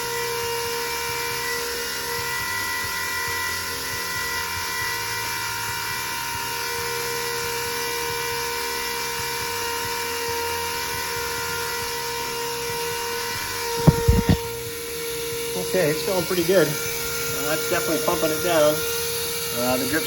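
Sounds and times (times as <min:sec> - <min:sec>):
liquid pump whining: 0:00.0 - 0:20.0
sharp knocks: 0:13.8 - 0:14.9.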